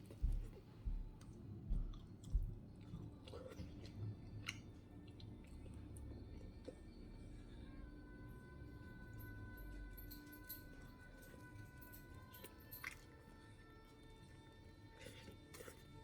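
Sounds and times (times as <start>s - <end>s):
close chewing with wet clicks: 0.0s - 7.6s, 8.8s - 16.0s.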